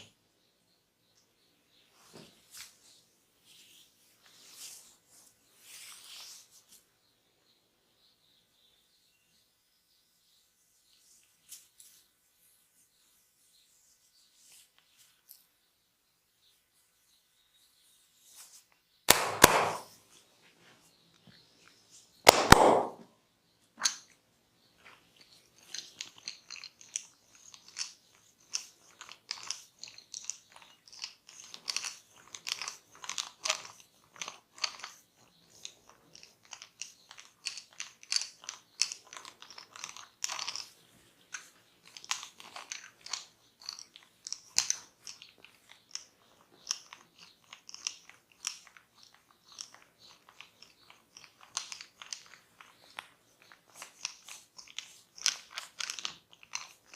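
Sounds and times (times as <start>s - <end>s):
hands rubbing hair and skin: 22.3s - 23.0s.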